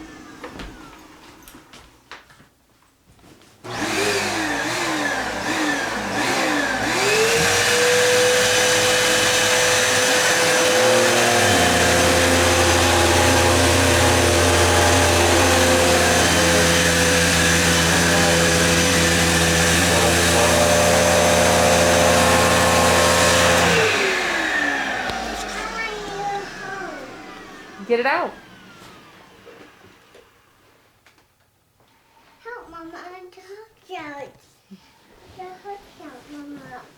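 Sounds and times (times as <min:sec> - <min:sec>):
vacuum cleaner motor whine: 0:00.0 - 0:01.7, 0:03.6 - 0:31.0.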